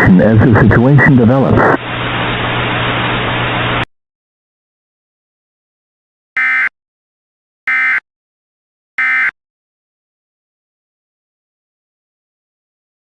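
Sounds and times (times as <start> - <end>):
steady hiss with low hum: 0.0 - 3.9
short data-tone bursts: 6.4 - 6.7, 7.7 - 8.0, 9.0 - 9.4.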